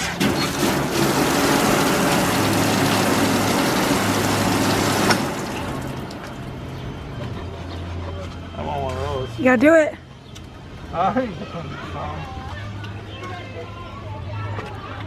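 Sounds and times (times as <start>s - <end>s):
water running from tap: 0.3s - 6.6s.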